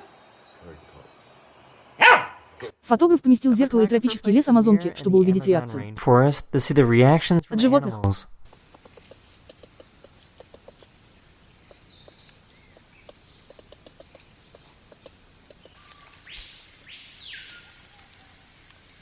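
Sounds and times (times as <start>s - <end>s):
light clicks: 8.5s - 15.8s
high-pitched insect buzz: 8.5s - 19.0s
faint bird chirps: 8.7s - 19.0s
bird call rising and falling: 9.5s - 19.0s.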